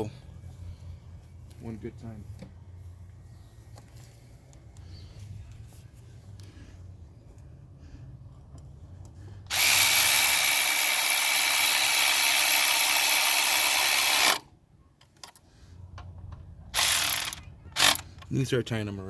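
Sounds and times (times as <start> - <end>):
power tool running: 9.5 - 14.5, 16.8 - 18.1.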